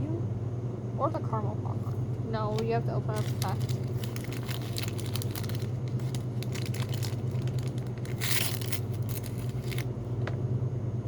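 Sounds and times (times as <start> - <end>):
steady low hum: 0.0 - 11.0
plastic ripping: 2.5 - 10.0
plastic wrapping crackling: 2.5 - 10.0.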